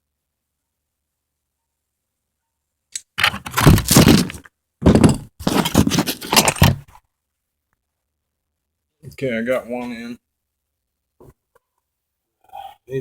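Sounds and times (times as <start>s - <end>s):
metal tools scraping and clattering: 3.2s - 6.8s.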